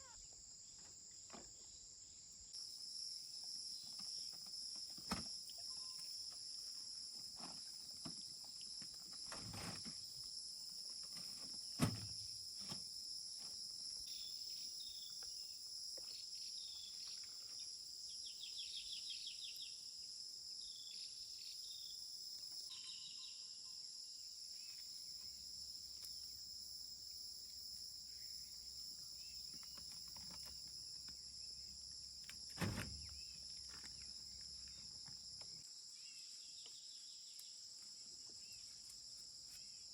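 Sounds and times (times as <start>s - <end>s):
insects chorus: 0.0s - 39.9s
bird chirping: 18.1s - 19.8s, 22.7s - 23.8s.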